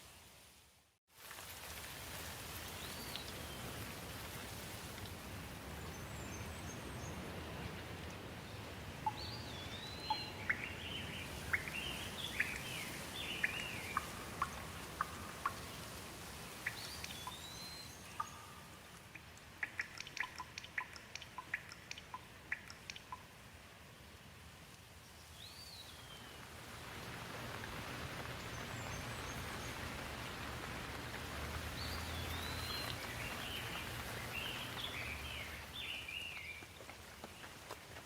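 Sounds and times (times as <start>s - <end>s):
steady rain: 0.0s - 38.0s
water drops dripping: 9.0s - 12.7s, 13.4s - 16.0s, 16.6s - 23.4s
bird chirping: 9.0s - 15.8s, 16.6s - 23.2s, 31.8s - 36.6s.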